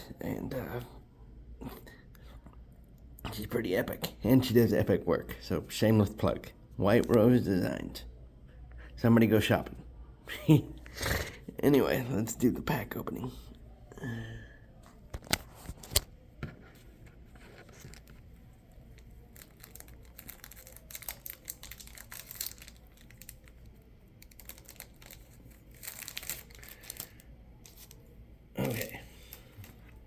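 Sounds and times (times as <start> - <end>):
foil wrapper crackling: 17.7 - 30.0.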